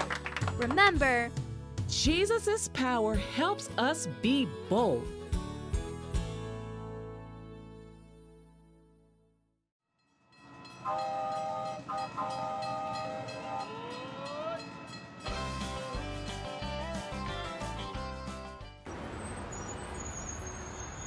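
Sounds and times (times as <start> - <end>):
music: 0.0 - 18.9
train horn blasts: 10.7 - 14.6.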